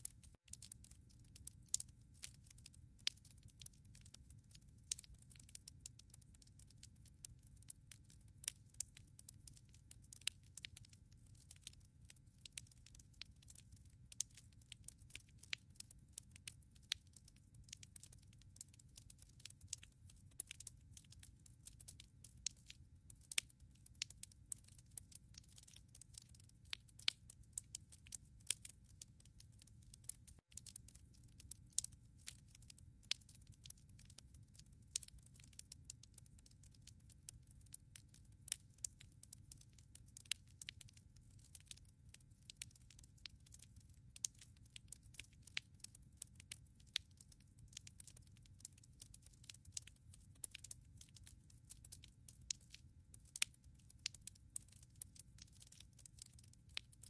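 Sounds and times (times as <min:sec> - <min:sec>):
fire crackling and popping: 0:00.0 - 0:57.0.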